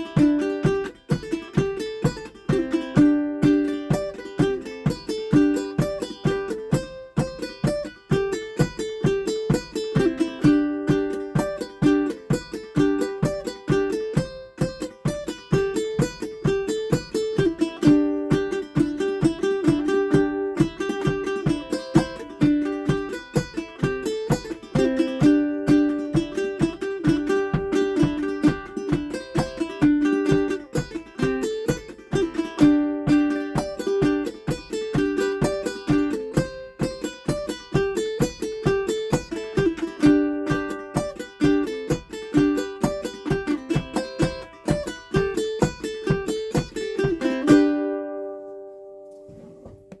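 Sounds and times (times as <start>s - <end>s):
ukulele playing: 0.0s - 50.0s.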